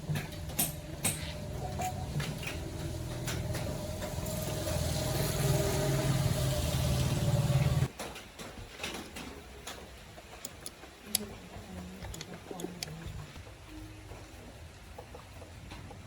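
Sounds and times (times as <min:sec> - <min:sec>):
motor running: 0:00.0 - 0:07.9
faint clicks and knocks: 0:07.9 - 0:16.0.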